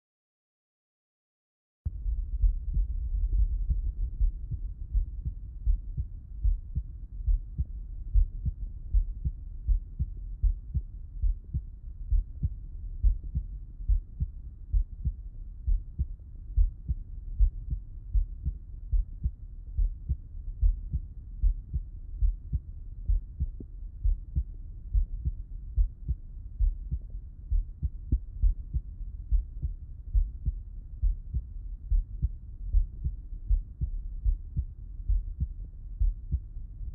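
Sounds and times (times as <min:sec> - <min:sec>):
heartbeat thumps: 0:01.9 - 0:36.5.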